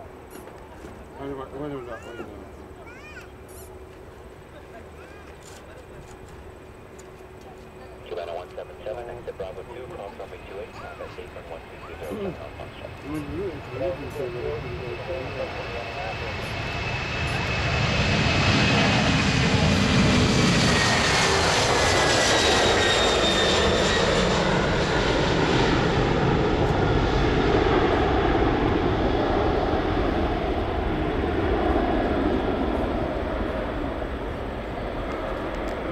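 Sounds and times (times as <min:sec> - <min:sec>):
jet airliner engines passing: 0:00.0 - 0:35.9.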